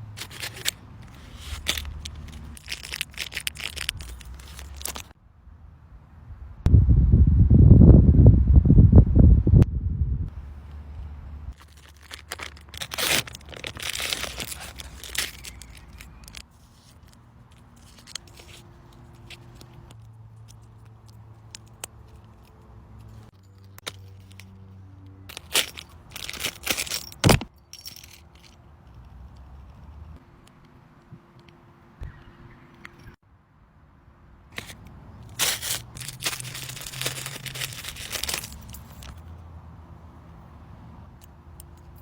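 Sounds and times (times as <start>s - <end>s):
paper crinkling and tearing: 0.0s - 5.1s, 11.6s - 17.2s, 34.6s - 39.2s.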